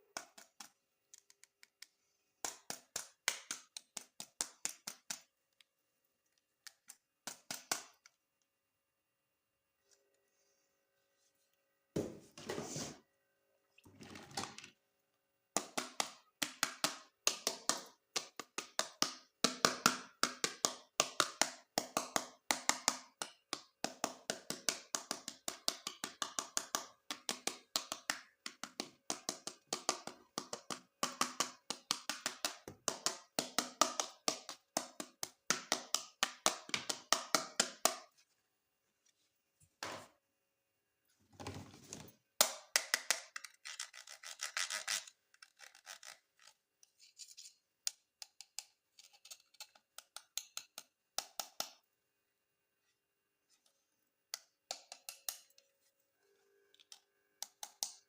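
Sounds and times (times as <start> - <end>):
plastic toy parts clicking: 42.7 - 46.6, 47.9 - 51.8.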